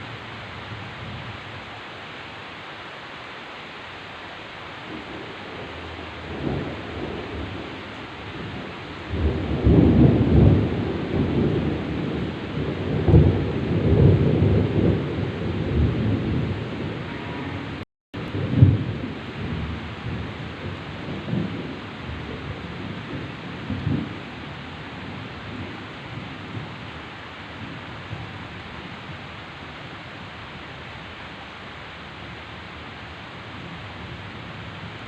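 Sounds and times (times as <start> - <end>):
heavy rain falling: 0.0 - 35.0
thunder rolling: 4.9 - 26.9.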